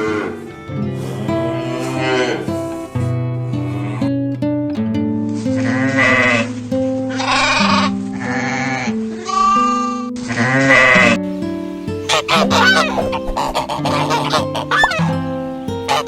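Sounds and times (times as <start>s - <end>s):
background music: 0.0s - 16.0s
sheep or goats bleating: 1.0s - 2.9s.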